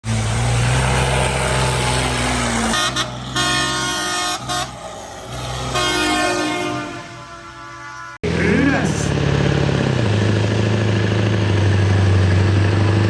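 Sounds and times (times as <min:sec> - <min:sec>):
heavy engine droning: 0:00.0 - 0:13.0
horn blasts: 0:02.7 - 0:04.9, 0:05.6 - 0:08.4.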